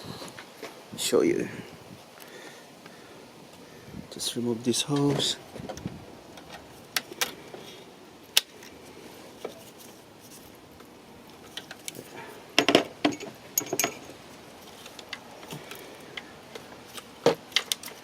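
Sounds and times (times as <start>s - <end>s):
metal tools clicking and clinking: 12.6s - 14.2s.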